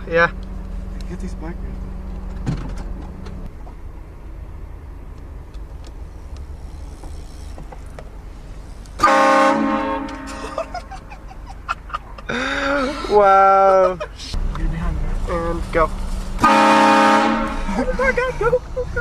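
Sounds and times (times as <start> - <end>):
vehicle rumble: 0.0 - 19.0
multi-tone air horn blast: 9.0 - 10.7, 16.4 - 18.5.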